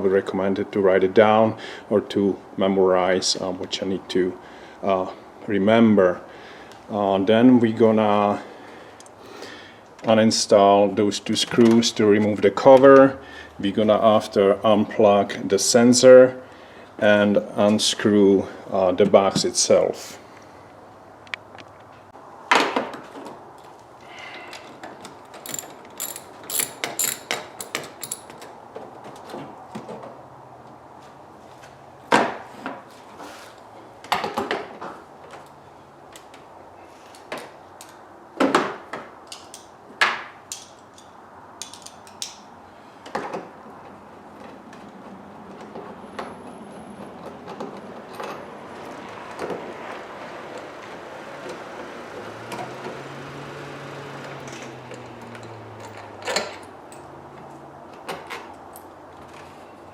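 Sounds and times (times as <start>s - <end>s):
parts knocking and clunking: 24.8s - 30.1s
ratchet clicking: 25.5s - 28.3s.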